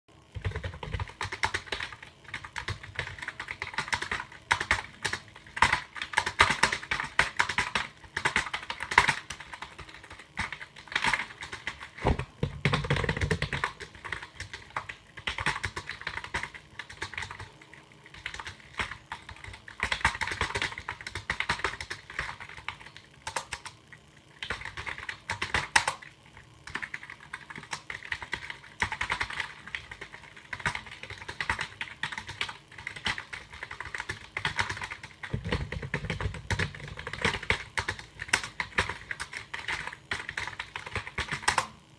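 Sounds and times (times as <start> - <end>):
computer keyboard typing: 0.3 - 41.8.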